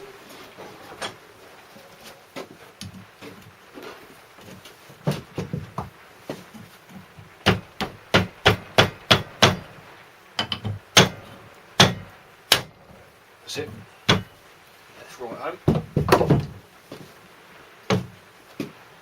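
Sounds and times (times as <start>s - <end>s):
hammer tapping on metal: 7.4s - 9.8s, 10.4s - 12.8s, 13.7s - 14.4s.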